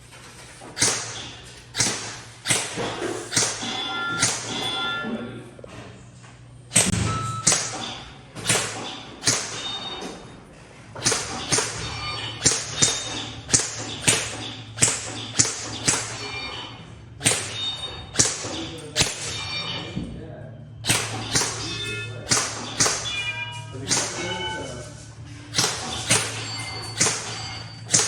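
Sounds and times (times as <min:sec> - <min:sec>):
airsoft gun shots: 0:00.8 - 0:04.8, 0:06.7 - 0:09.9, 0:11.0 - 0:16.4, 0:17.2 - 0:19.4, 0:20.8 - 0:24.4, 0:25.5 - 0:28.0.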